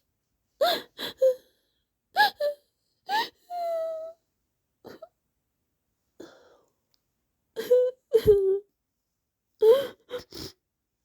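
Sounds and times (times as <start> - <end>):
woman whimpering sobs: 2.2 - 4.2, 7.6 - 8.7.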